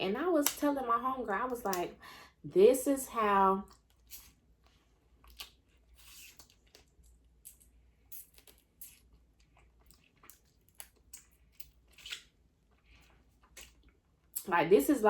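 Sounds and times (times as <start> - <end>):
chewing: 3.6 - 14.4.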